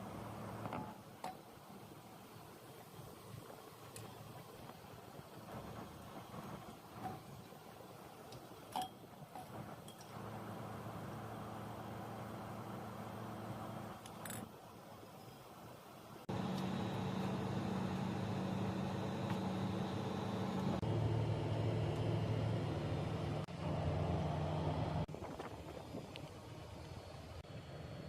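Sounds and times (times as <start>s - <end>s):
machinery humming: 16.3s - 28.0s.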